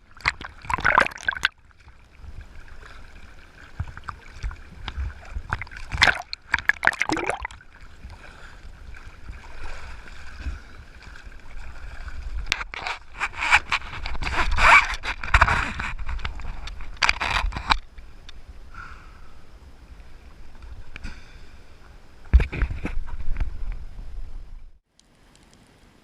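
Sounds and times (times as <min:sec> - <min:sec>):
water gurgling and splashing: 0:00.0 - 0:17.5
crackling bubbles: 0:00.0 - 0:18.4.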